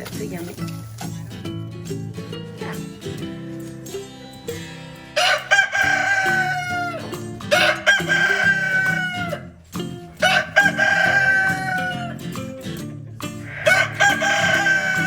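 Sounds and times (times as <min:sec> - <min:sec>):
background music: 0:00.0 - 0:15.0
rooster crowing: 0:05.2 - 0:09.6, 0:10.2 - 0:12.4, 0:13.4 - 0:15.0.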